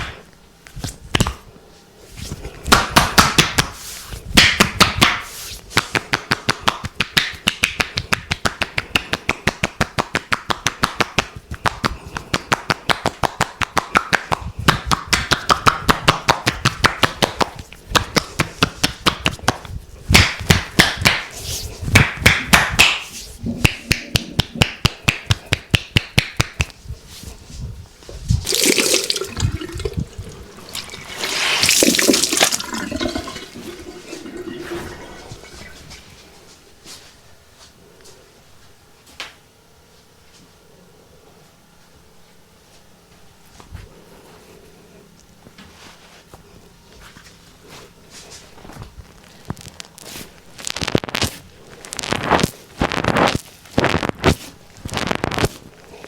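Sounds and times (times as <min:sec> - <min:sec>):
hands slapping on body: 0:00.8 - 0:01.5, 0:02.2 - 0:26.8.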